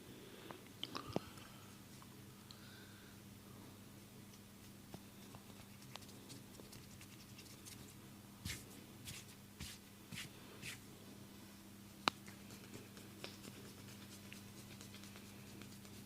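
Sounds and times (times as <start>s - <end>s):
hands rubbing through hair: 8.5s - 10.8s.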